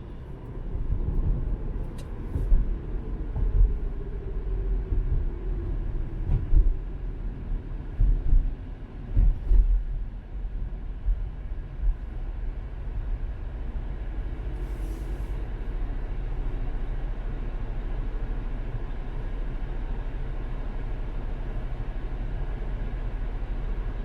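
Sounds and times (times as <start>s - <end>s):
car road and engine rumble: 0.0s - 24.0s
brief hiss: 14.6s - 15.4s.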